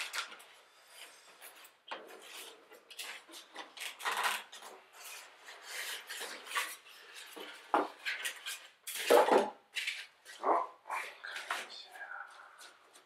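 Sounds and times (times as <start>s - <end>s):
packaging rustling and scraping: 0.0s - 10.4s.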